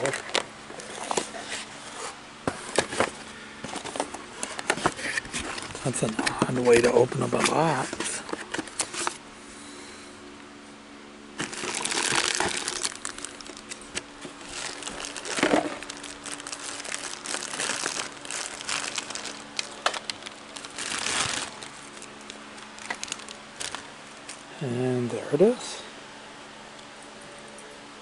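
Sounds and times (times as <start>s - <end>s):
packaging rustling and crinkling: 0.0s - 9.2s, 11.4s - 24.4s.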